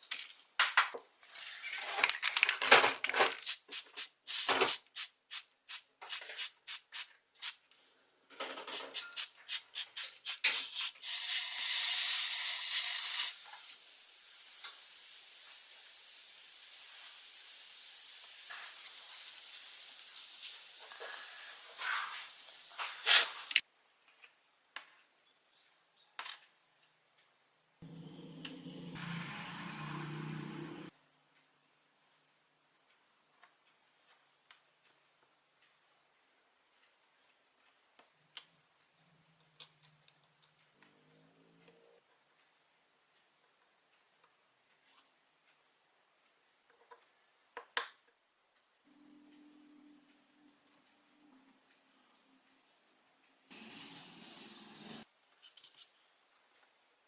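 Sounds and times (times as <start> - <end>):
small parts and tools clattering: 0.0 - 3.6
spray hiss: 8.8 - 23.6.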